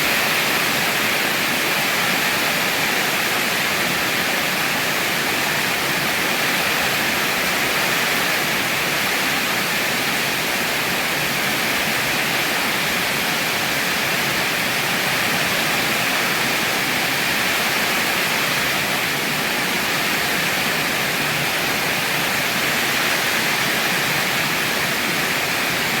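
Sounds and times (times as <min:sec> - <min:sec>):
heavy rain: 0:00.0 - 0:26.0.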